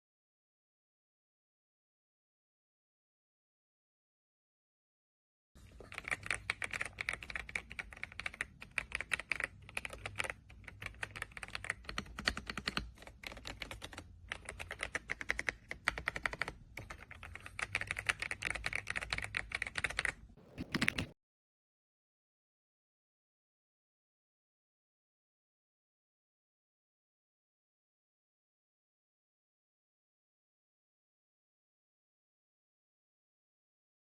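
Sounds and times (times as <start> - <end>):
mechanical keyboard typing: 5.8 - 21.2.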